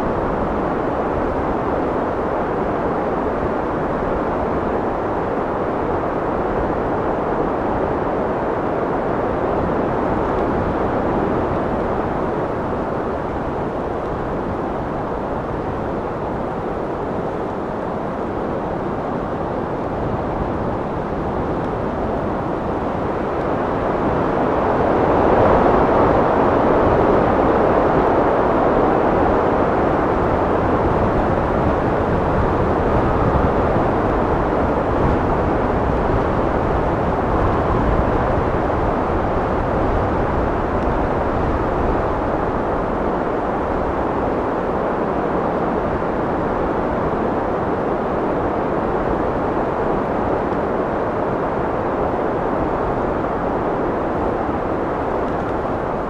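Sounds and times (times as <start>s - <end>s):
wind blowing: 6.0s - 27.6s, 29.1s - 56.0s.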